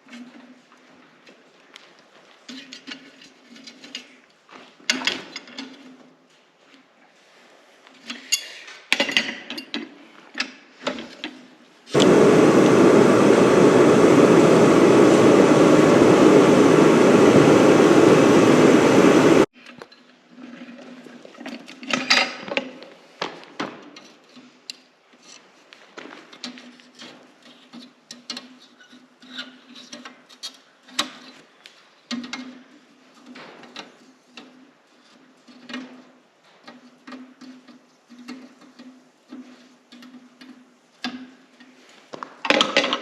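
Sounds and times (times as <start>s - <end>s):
forge rushing noise: 12.0s - 19.5s.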